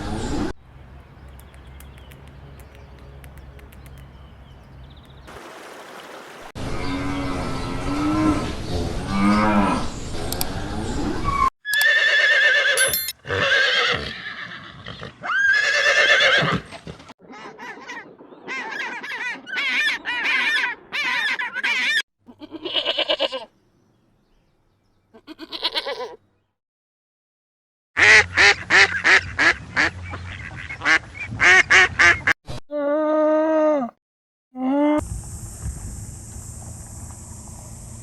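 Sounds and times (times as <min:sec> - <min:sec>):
farm animal calls: 0:25.1 - 0:26.2.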